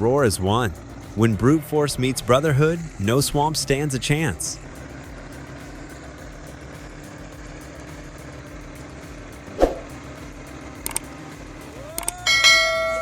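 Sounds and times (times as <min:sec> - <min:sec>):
heavy vehicle engine idling: 0:00.0 - 0:13.0
sharp knock: 0:09.6 - 0:09.9
small clicks: 0:10.8 - 0:11.1, 0:11.9 - 0:12.2.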